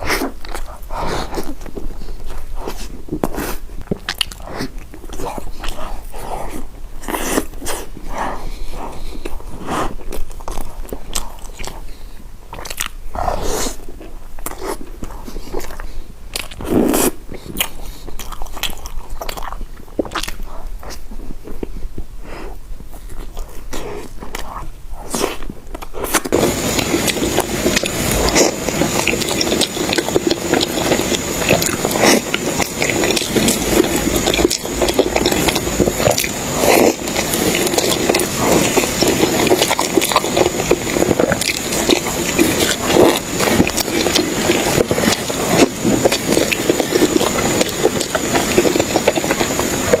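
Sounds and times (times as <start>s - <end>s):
person chewing bread: 0.0s - 50.0s
dense continuous crackling: 25.5s - 50.0s.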